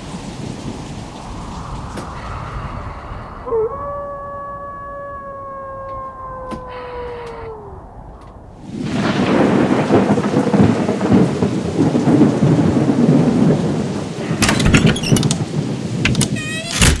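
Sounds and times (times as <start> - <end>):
sharp thunder cracks: 0.0 - 3.6, 6.5 - 16.3
rolling thunder: 0.0 - 16.4
steady rain: 0.0 - 17.0.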